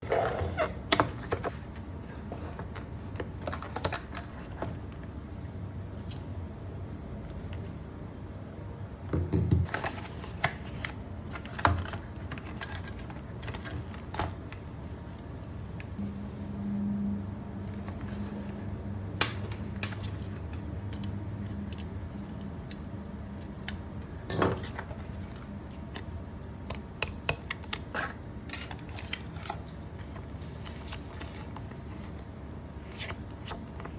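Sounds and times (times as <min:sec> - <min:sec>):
cardboard and plastic rustling: 0:00.9 - 0:06.4, 0:09.7 - 0:16.4, 0:23.3 - 0:26.2, 0:27.5 - 0:32.2.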